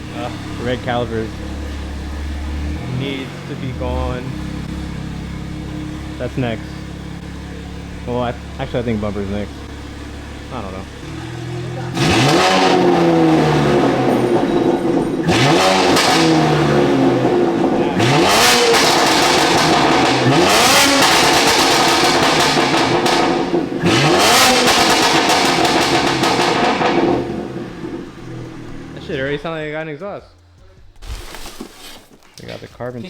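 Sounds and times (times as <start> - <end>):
car engine accelerating hard: 0.0 - 29.7.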